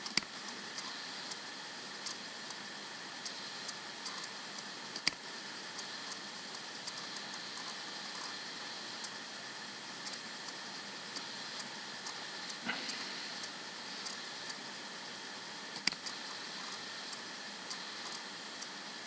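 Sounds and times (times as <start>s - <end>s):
mouse and keyboard clicks: 0.0s - 1.4s, 4.0s - 5.2s, 10.0s - 12.6s, 15.7s - 18.7s
steady hiss: 0.0s - 19.0s.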